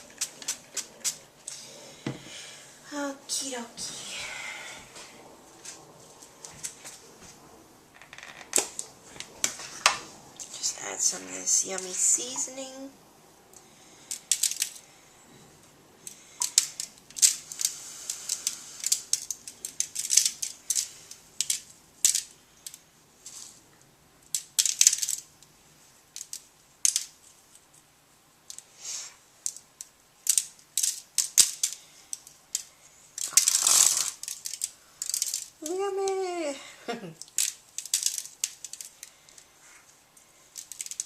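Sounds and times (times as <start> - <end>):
dry seasoning pattering: 0.0 - 1.6
seasoning shaker rattling: 0.0 - 1.6, 29.4 - 36.3, 37.2 - 39.4, 40.5 - 41.0.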